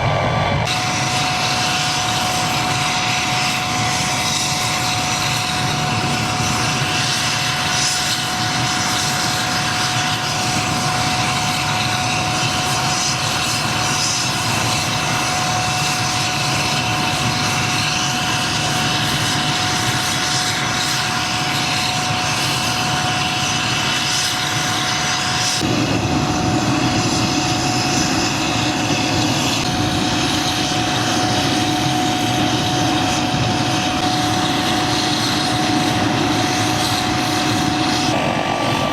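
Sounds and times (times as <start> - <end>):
helicopter engine whine: 0.0 - 38.9
deep steady drone: 25.6 - 38.9.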